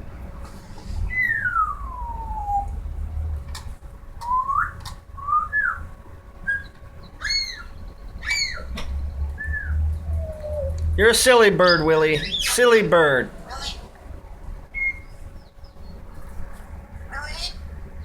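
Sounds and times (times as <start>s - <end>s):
pet bird whistling: 1.0s - 2.8s, 4.2s - 8.8s, 9.4s - 12.8s, 14.7s - 15.2s.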